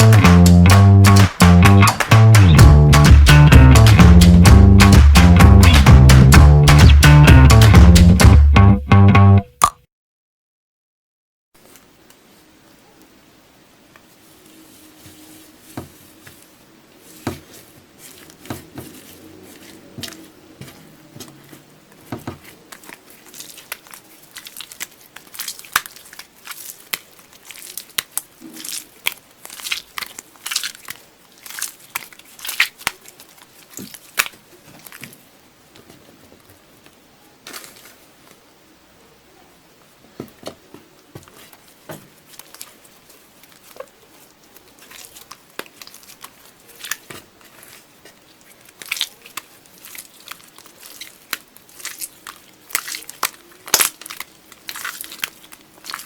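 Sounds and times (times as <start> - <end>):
slime squeezed crackling: 17.0 - 35.2, 41.3 - 56.0.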